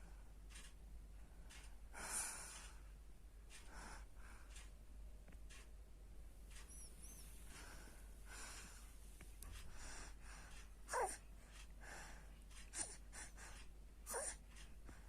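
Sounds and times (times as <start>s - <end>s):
baby snoring softly: 10.9s - 11.2s, 14.1s - 14.4s.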